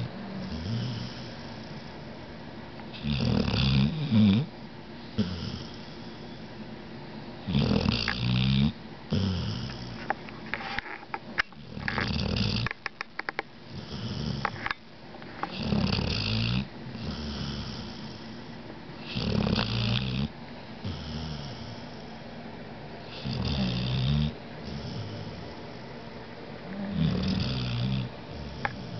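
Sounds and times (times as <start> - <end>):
heavy snoring: 0.0 - 2.1, 3.0 - 4.5, 5.2 - 6.4, 7.5 - 10.1, 11.6 - 12.8, 13.7 - 14.7, 15.5 - 22.1, 23.1 - 25.9, 26.8 - 28.9
quiet breathing: 0.1 - 2.2, 17.0 - 18.6, 20.8 - 22.3, 24.6 - 27.4, 28.1 - 28.9.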